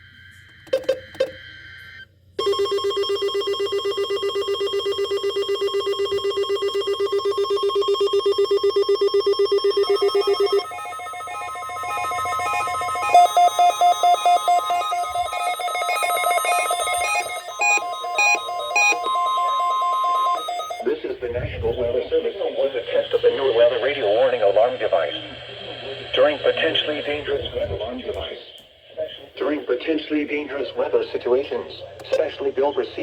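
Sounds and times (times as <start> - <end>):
steady alarm tone: 0.0 - 22.5
rapid trilling alarm tone: 2.4 - 20.9
fast high beeping: 7.0 - 22.2.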